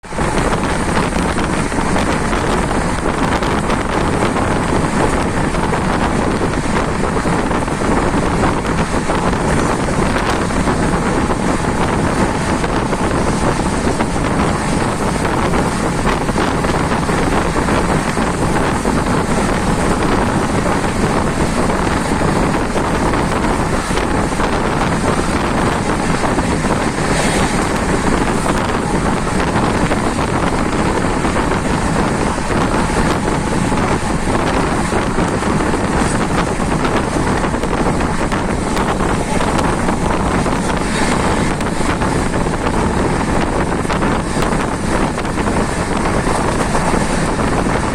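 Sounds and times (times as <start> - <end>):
train running at speed: 0.0 - 47.9
wind buffeting microphone: 0.0 - 47.9.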